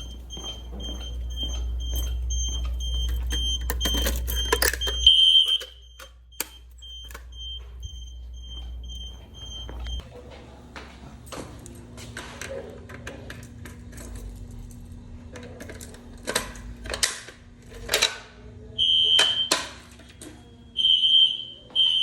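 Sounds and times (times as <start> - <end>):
shrill electronic alarm tone: 0.0 - 10.0
low steady hum: 0.0 - 10.7.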